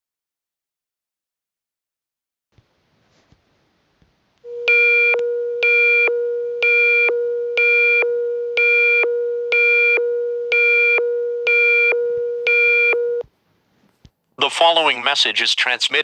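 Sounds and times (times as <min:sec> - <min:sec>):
buzzy pulsing beep: 0:04.5 - 0:13.2.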